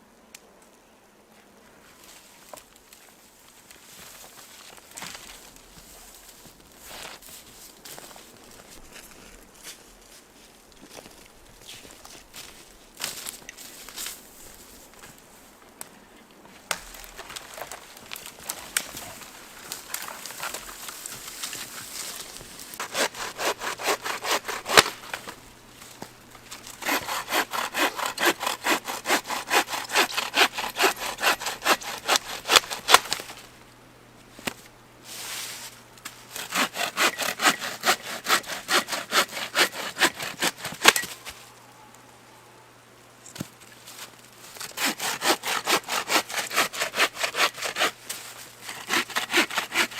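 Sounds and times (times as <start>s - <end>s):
hand saw cutting wood: 18.4s - 25.4s, 26.5s - 33.4s, 36.3s - 41.2s, 44.6s - 49.9s.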